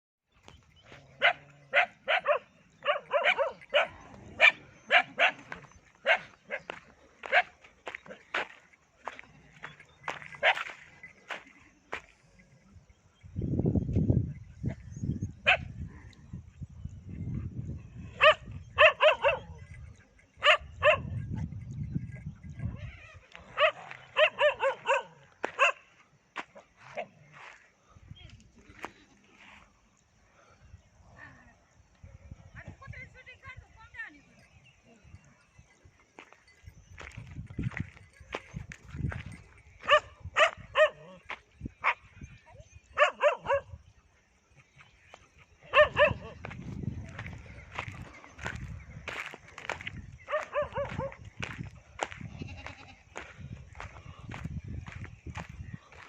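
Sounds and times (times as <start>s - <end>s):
dog barking: 1.2s - 8.2s, 15.4s - 15.7s, 18.2s - 19.6s, 20.4s - 21.1s, 23.5s - 25.8s, 39.8s - 41.2s, 41.8s - 42.0s, 43.0s - 43.8s, 45.7s - 46.4s, 50.2s - 51.2s.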